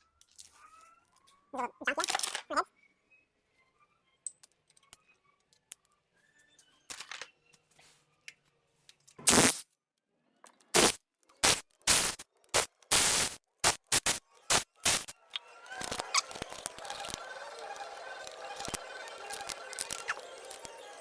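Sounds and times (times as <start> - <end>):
power wrench bursts: 10.8 - 20.7.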